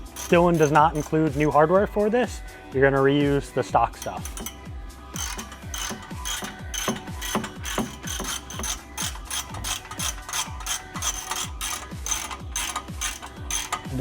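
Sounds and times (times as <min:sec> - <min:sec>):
ratchet wrench clicking: 0:00.0 - 0:01.5, 0:04.0 - 0:14.0.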